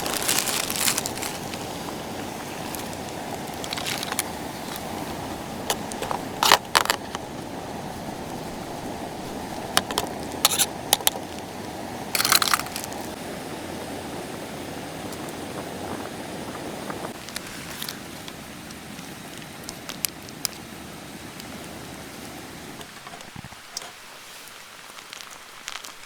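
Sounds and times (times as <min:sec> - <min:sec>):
wood fire crackling and popping: 0:00.0 - 0:26.0.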